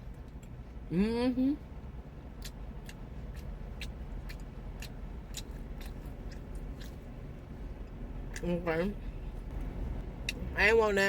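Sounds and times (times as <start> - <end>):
person chewing with wet clicks: 0.0 - 0.6, 2.3 - 8.5, 9.5 - 10.5
low steady hum: 0.0 - 11.0.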